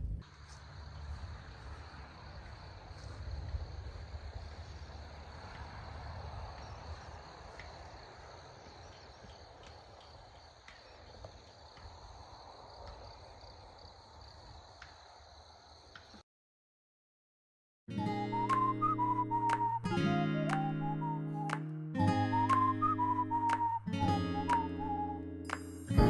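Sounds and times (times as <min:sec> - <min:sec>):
low wind-like rumble: 0:00.0 - 0:10.4
insects chirring: 0:00.2 - 0:16.2.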